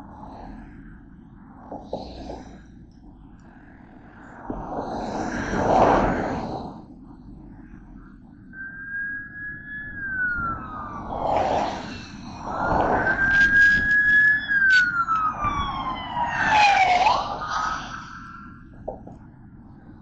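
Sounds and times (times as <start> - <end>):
emergency siren wailing: 8.6 - 18.7
traffic noise with passing vehicles: 10.0 - 20.0.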